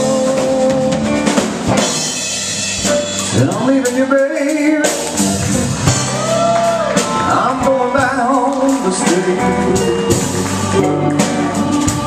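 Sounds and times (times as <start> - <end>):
bass: 0.0 - 12.0
drums: 0.0 - 12.0
electric guitar lead: 4.8 - 12.0.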